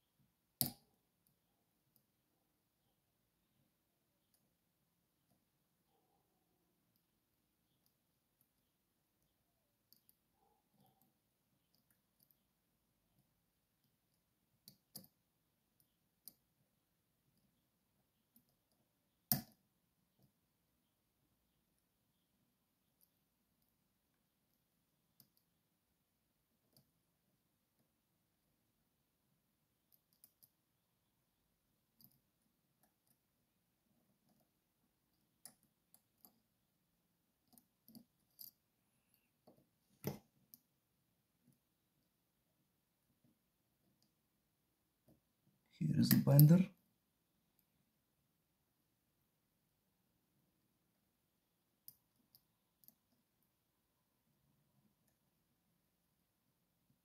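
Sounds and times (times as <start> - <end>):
lock pick clicking on pins: 37.4 - 38.6.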